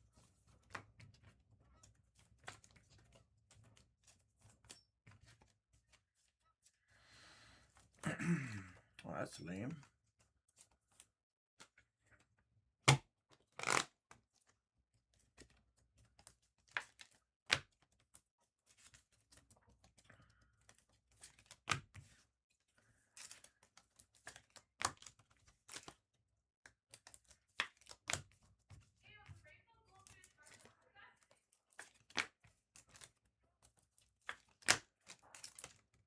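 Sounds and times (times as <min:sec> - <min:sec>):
trading cards clicking and tapping: 0:13.6 - 0:13.9.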